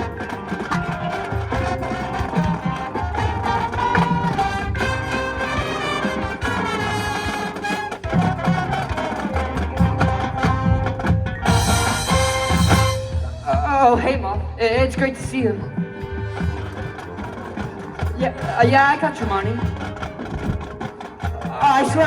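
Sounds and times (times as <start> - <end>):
brass sustained chords: 0.0 - 13.5
steady drum beat: 0.0 - 22.0.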